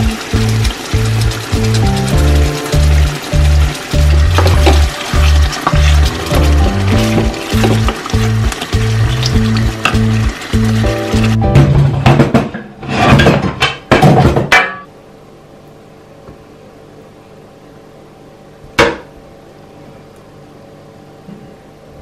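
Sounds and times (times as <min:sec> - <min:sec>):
pans and utensils clattering: 0:11.2 - 0:14.9.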